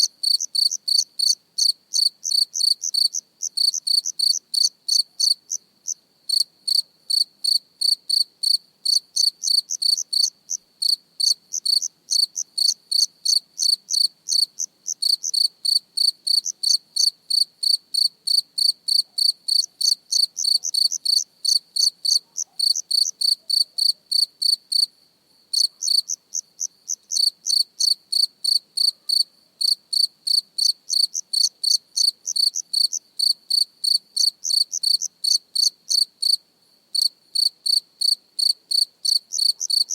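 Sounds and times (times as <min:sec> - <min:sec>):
cricket chirping: 0:00.0 - 0:39.9.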